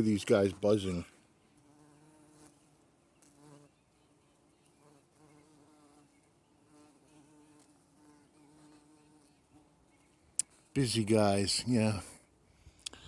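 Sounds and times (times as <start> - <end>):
bees buzzing: 0.0 - 10.0.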